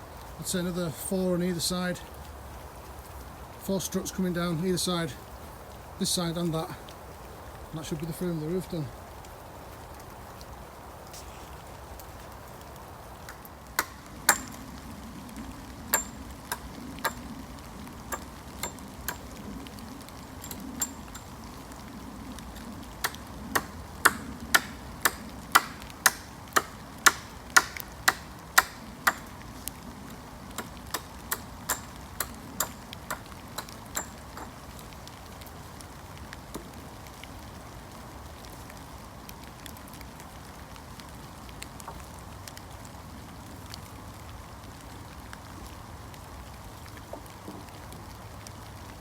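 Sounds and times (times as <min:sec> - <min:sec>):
hammer driving nails into wood: 0:23.0 - 0:29.2.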